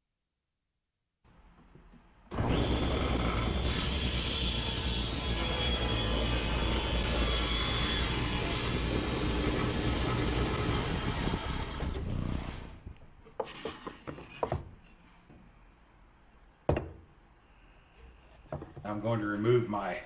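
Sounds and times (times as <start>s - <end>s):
table saw cutting wood: 2.4s - 12.8s
wooden knocks: 16.7s - 17.0s.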